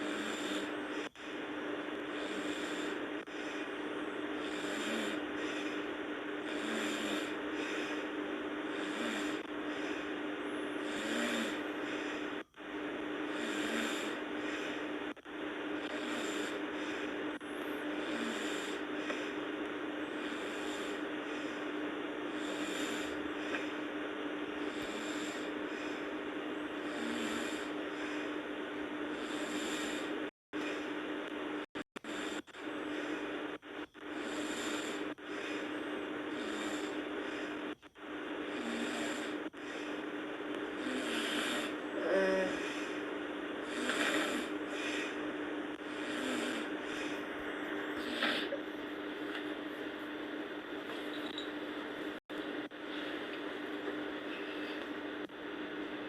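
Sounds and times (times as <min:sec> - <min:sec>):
person snoring: 0:00.0 - 0:01.5, 0:02.1 - 0:19.4, 0:20.0 - 0:48.7
steady hum: 0:00.0 - 0:56.0.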